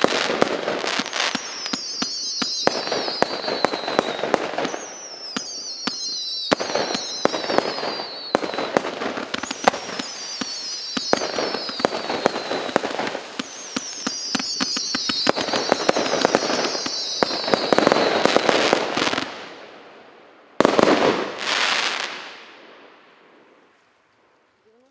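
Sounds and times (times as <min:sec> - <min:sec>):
firework cake firing bangs: 0:00.0 - 0:19.3
loud firework bursts: 0:00.0 - 0:20.0, 0:20.6 - 0:22.6
firework whistling tails: 0:00.0 - 0:22.6.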